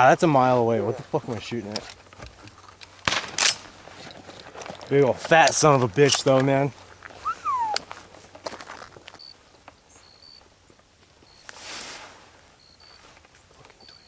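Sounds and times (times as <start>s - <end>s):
rustling in dry brush: 0.0s - 14.0s
soft hiss: 5.2s - 14.0s
short high chirps: 7.2s - 7.8s.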